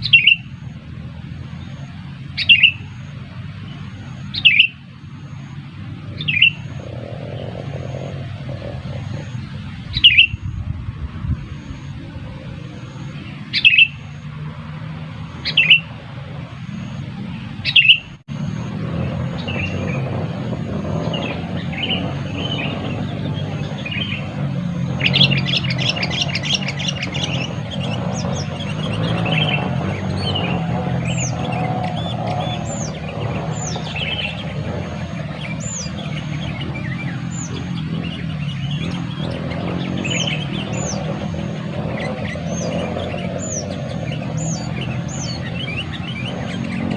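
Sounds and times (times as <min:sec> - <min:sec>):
bird chirps: 0:00.0 - 0:00.8, 0:01.4 - 0:10.6, 0:11.2 - 0:14.5, 0:15.1 - 0:46.9
rapid rattling bird trill: 0:00.0 - 0:10.7, 0:11.4 - 0:46.9
steady low rumble: 0:06.8 - 0:13.5.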